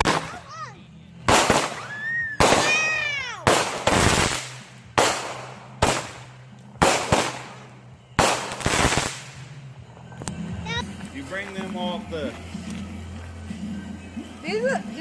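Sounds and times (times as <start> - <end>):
fireworks bangs: 0.0 - 0.6, 1.2 - 9.6.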